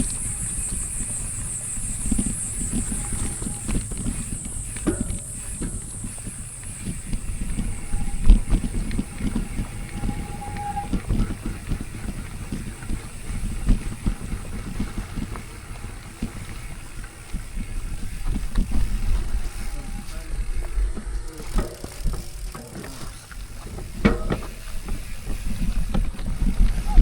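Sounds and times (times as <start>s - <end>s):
high squeal: 0.0s - 14.2s, 18.8s - 22.4s, 26.7s - 27.0s
bike rolling over rough trail: 0.0s - 27.0s.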